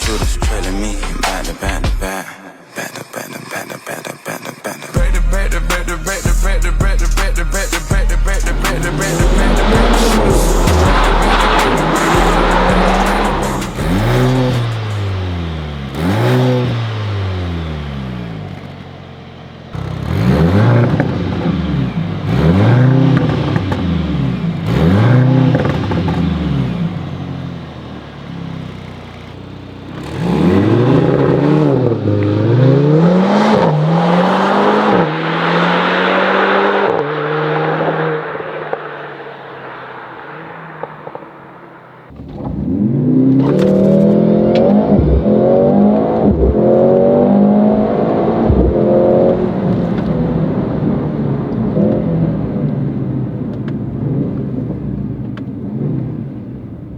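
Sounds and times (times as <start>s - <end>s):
car engine revving: 0.0s - 2.2s, 3.9s - 56.9s
exhaust crackles: 0.0s - 56.9s.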